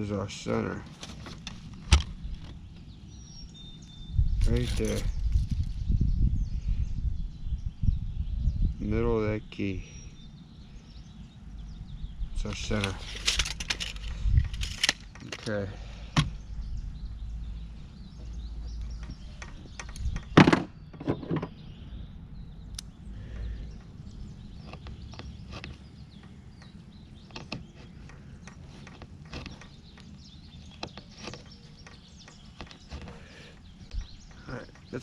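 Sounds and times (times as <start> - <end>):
light clicks and knocks: 18.2 - 21.6, 24.6 - 35.0.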